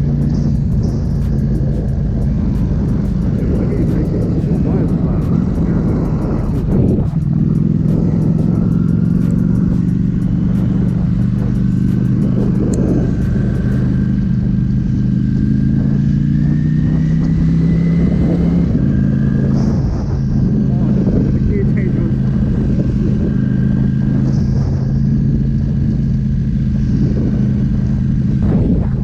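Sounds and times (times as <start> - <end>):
faint high whine: 0.0 - 16.1
motorcycle engine droning: 0.0 - 29.0.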